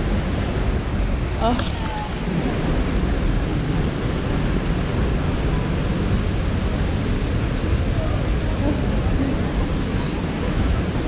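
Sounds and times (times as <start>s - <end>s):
stream and waterfall rushing: 0.0s - 11.0s.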